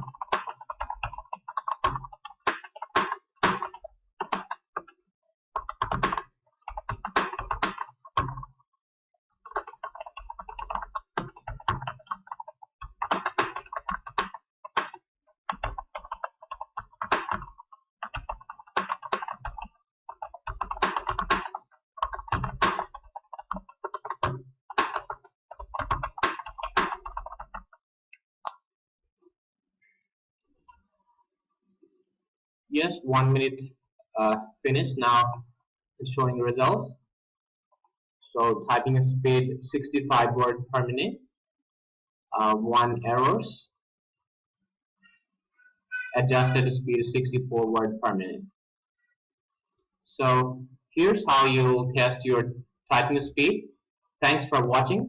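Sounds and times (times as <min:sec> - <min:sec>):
fast typing on keyboard: 0:00.0 - 0:05.0, 0:05.6 - 0:08.6, 0:09.4 - 0:27.8.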